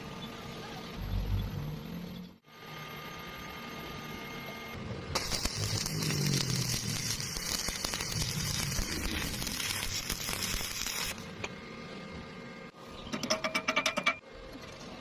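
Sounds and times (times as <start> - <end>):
welding arc crackling: 5.1 - 11.4.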